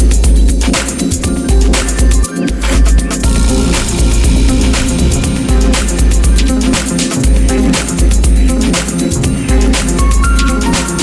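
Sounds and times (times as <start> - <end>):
electronic dance music: 2.9 - 11.0.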